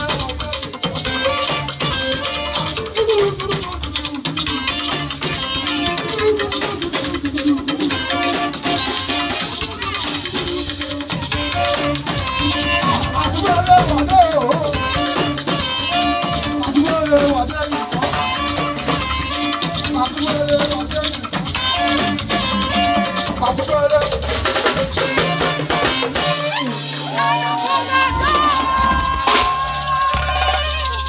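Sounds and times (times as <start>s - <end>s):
band playing upbeat music: 0.0s - 31.0s
shaker rhythm: 24.9s - 31.0s.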